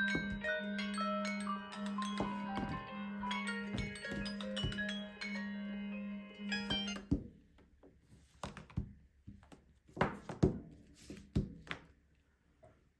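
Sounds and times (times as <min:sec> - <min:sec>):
taps and knocks handling phone: 0:00.0 - 0:00.4, 0:02.0 - 0:02.9, 0:03.7 - 0:05.0
phone alarm marimba melody: 0:00.0 - 0:07.0.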